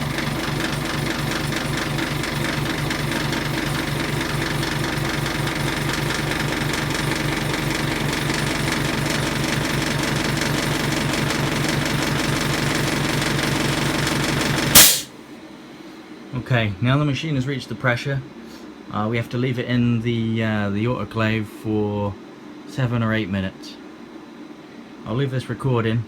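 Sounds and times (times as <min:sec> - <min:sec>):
air compressor pulsing: 0:00.0 - 0:15.1
sharp machine click: 0:14.8 - 0:15.1.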